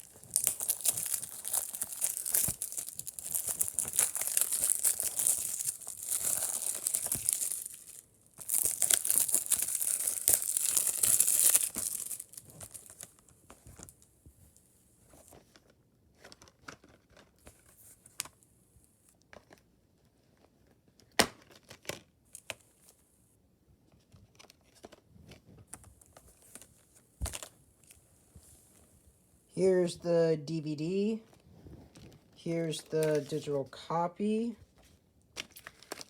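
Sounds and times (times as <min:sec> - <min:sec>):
plastic shrink-wrap crinkling and tearing: 0:00.0 - 0:14.0, 0:35.4 - 0:36.0.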